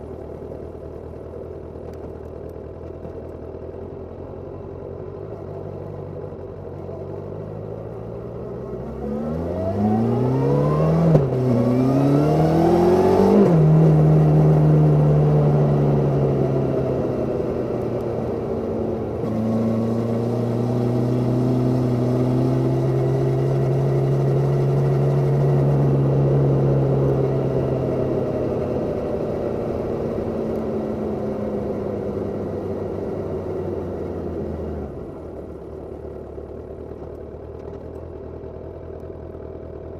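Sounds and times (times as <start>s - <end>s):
motorcycle engine revving: 8.7s - 35.5s.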